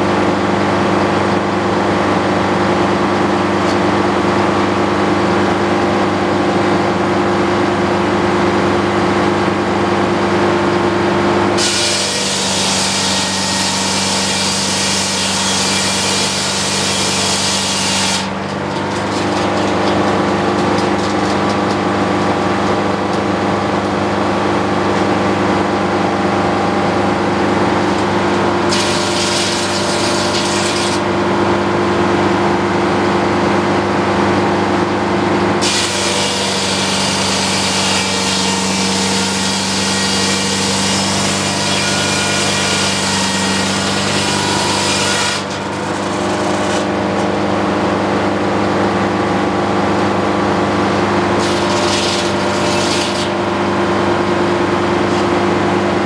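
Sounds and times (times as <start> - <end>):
sawmill power unit humming: 0.0 - 56.0
saw blade cutting through log: 11.6 - 22.8, 27.4 - 31.2, 35.6 - 47.0, 51.3 - 53.8.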